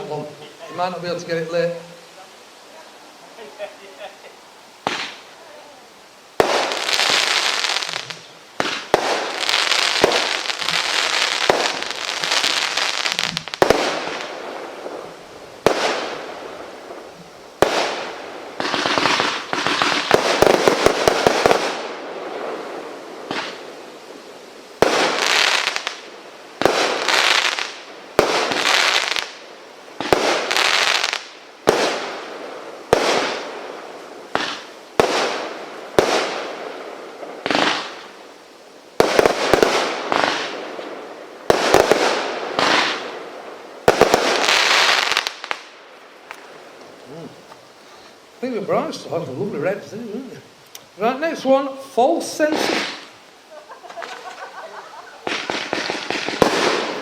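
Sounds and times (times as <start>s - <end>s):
crackling fizzing firework tails: 0.0s - 57.0s
firework bangs: 4.8s - 5.3s, 6.4s - 38.3s, 38.9s - 46.8s, 52.4s - 57.0s.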